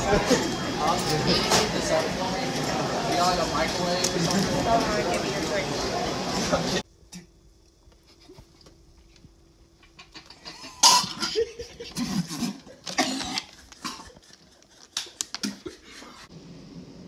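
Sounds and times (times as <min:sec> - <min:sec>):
person coughing: 0:10.5 - 0:14.2.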